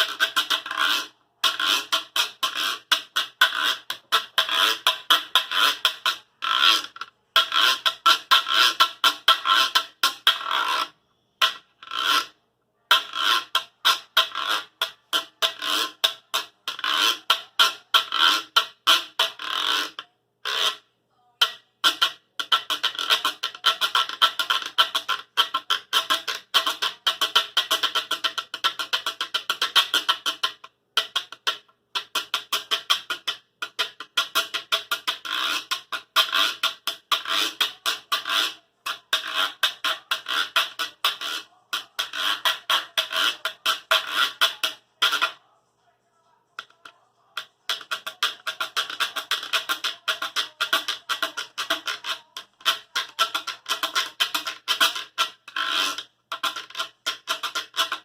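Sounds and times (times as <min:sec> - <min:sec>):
guiro scraped rhythmically: 0:32.2 - 0:45.4, 0:47.4 - 0:58.0.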